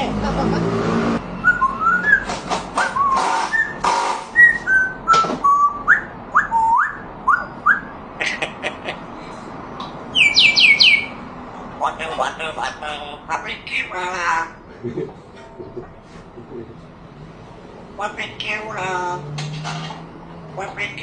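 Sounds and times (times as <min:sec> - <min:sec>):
parrot whistling: 0:01.4 - 0:08.0, 0:10.1 - 0:11.2.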